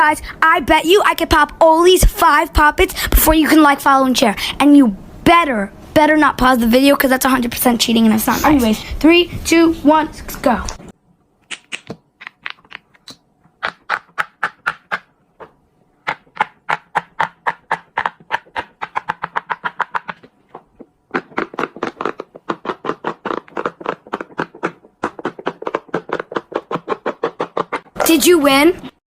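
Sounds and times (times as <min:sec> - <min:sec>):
fidget toy bubbles popping: 0:11.5 - 0:15.0, 0:21.1 - 0:27.8.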